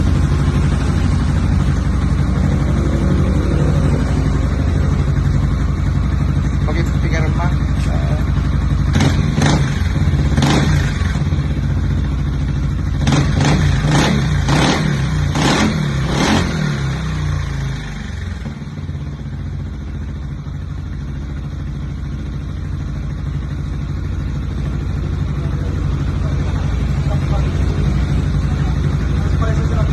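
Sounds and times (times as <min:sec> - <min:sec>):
scooter engine revving and idling: 0:00.0 - 0:29.9.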